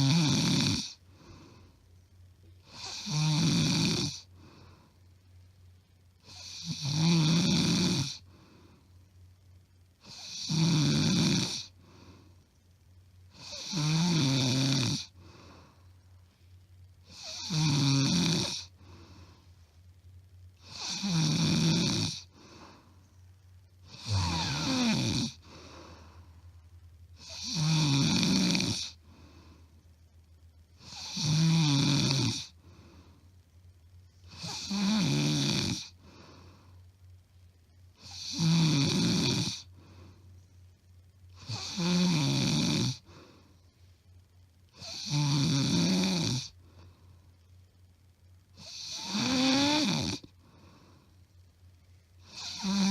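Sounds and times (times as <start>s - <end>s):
woman snoring loudly: 0.0s - 1.0s, 2.7s - 4.3s, 6.2s - 8.3s, 10.0s - 11.8s, 13.4s - 15.2s, 17.1s - 18.7s, 20.6s - 22.3s, 23.9s - 25.6s, 27.2s - 29.0s, 30.8s - 32.6s, 34.3s - 36.0s, 38.0s - 39.7s, 41.4s - 43.1s, 44.8s - 46.6s, 48.6s - 50.3s, 52.2s - 52.9s.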